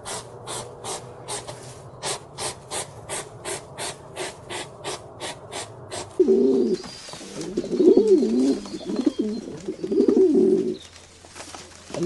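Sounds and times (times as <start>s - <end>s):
pigeon cooing: 0.0s - 10.9s.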